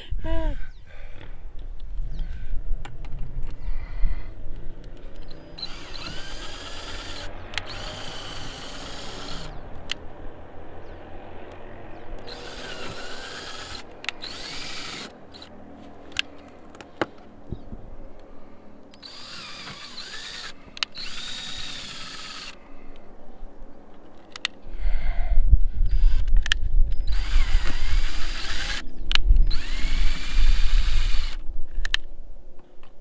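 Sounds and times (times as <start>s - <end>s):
power drill whining: 5.2s - 9.6s, 12.2s - 15.5s, 18.9s - 22.6s, 27.0s - 28.8s, 29.4s - 31.4s.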